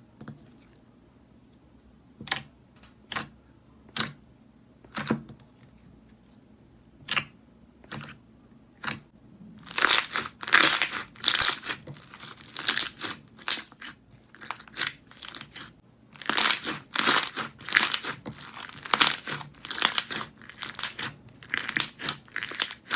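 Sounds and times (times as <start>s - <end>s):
slime squeezed by hand crackling: 9.6s - 22.9s.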